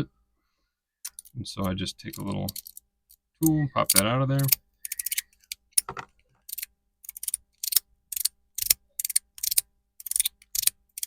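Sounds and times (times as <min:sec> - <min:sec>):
fidget slider clicking: 0:03.9 - 0:05.6, 0:06.5 - 0:11.0.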